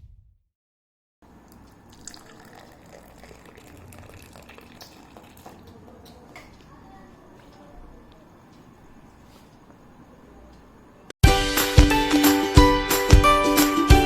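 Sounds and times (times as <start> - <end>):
liquid being poured: 1.4 - 5.8.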